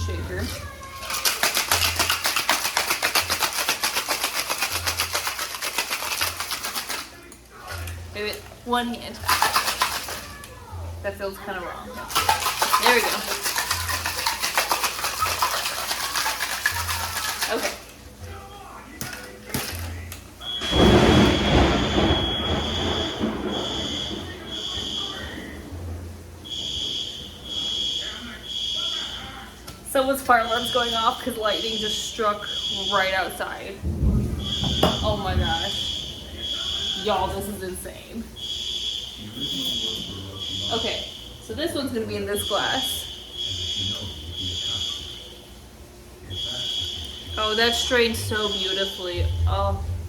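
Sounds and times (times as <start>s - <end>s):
ice rattling in cocktail shaker: 0.0s - 8.0s, 9.1s - 10.5s, 12.0s - 18.0s, 19.0s - 20.1s
fire alarm beeping: 20.4s - 45.6s, 46.2s - 50.0s
thunder rumble: 20.6s - 26.9s, 33.8s - 38.4s, 49.2s - 50.0s.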